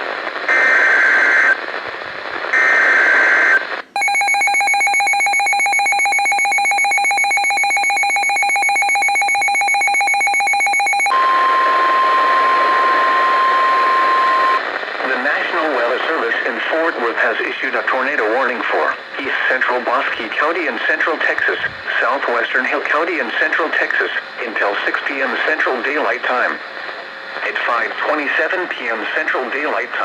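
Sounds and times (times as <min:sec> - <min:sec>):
steady single-pitch warning tone: 0:03.2 - 0:14.6.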